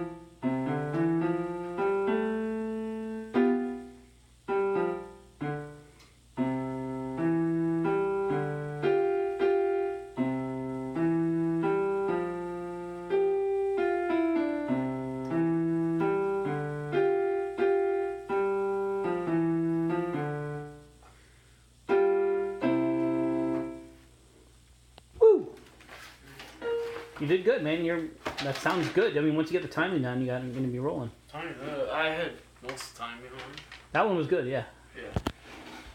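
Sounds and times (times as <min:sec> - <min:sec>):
simple piano piece: 0:00.0 - 0:21.0, 0:21.8 - 0:24.2, 0:26.6 - 0:28.0.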